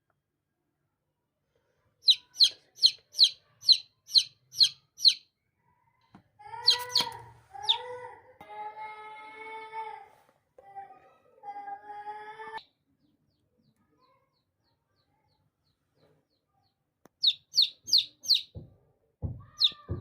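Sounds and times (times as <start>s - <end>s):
lower drawn-out chick calls: 2.0s - 5.3s, 6.6s - 7.9s, 17.2s - 18.6s
baby chicks peeping: 2.0s - 5.4s, 6.5s - 8.1s, 12.4s - 20.0s.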